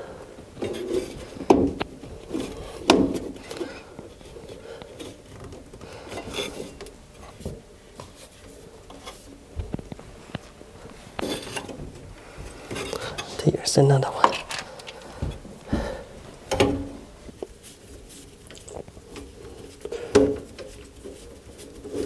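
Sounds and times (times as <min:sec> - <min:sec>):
knocks and scrapes on sheet metal: 0:00.6 - 0:03.7.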